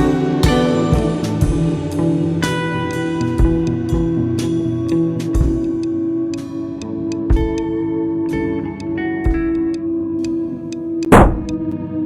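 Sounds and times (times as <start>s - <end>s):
plucked guitar-like music: 0.0s - 12.0s
low thumps: 11.0s - 11.7s.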